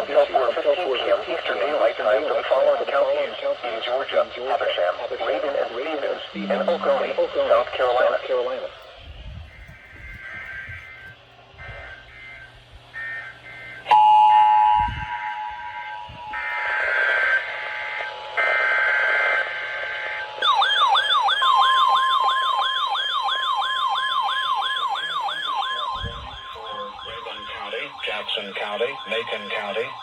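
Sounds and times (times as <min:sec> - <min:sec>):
two-tone attention signal: 0:06.4 - 0:07.2
steady tone: 0:06.4 - 0:07.4, 0:26.1 - 0:30.0.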